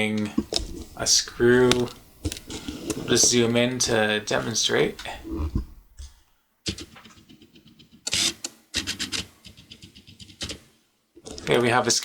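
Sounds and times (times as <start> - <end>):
rubbing and scraping on plastic: 0.0 - 12.0
rapid clicking: 0.2 - 6.2.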